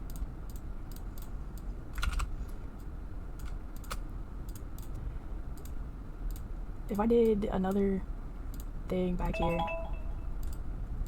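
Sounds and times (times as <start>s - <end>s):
keyboard and mouse clicking: 1.9s - 2.3s
low hum: 9.2s - 10.6s.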